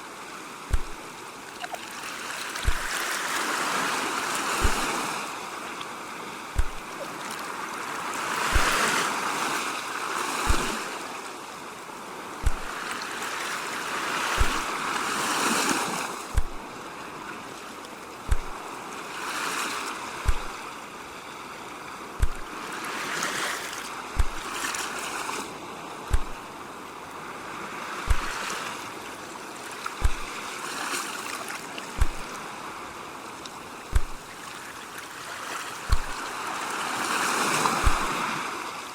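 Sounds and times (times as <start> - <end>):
sea waves washing on shore: 0.0 - 38.9
low thump: 0.7 - 1.0, 2.6 - 2.9, 4.6 - 4.9, 6.6 - 6.8, 8.5 - 8.8, 10.5 - 10.7, 12.4 - 12.8, 14.4 - 14.7, 16.3 - 16.6, 18.3 - 18.6, 20.2 - 20.5, 22.2 - 22.5, 24.2 - 24.5, 26.1 - 26.4, 28.1 - 28.4, 30.0 - 30.3, 32.0 - 32.3, 33.9 - 34.2, 35.9 - 36.2, 37.8 - 38.1.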